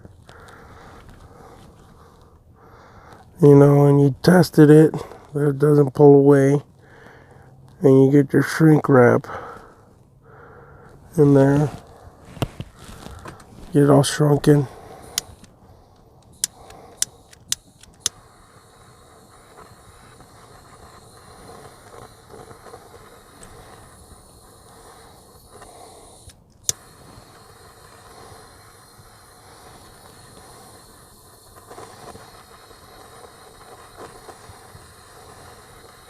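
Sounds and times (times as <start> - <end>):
heat tool hissing: 11.0 - 36.0
sharp clicks: 15.0 - 18.2.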